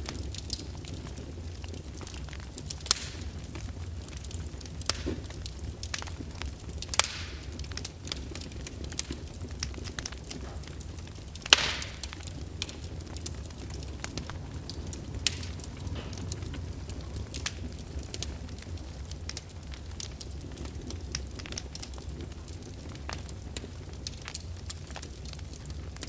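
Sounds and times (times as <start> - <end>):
fire crackling and popping: 0.0 - 26.0
loud snap of fire: 0.0 - 26.0
low rumble: 12.0 - 20.0.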